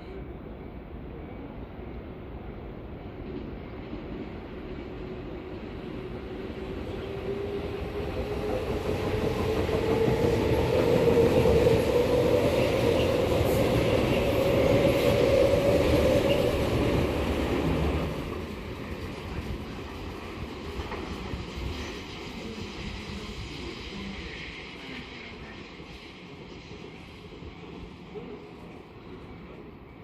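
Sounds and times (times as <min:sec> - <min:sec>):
train cars rumbling: 0:06.4 - 0:24.5.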